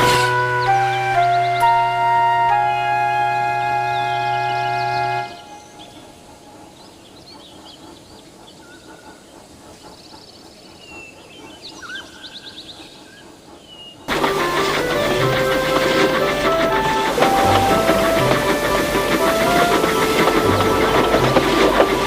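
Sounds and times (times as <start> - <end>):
birds chirping: 0.0 - 22.0
loud music: 14.1 - 22.0.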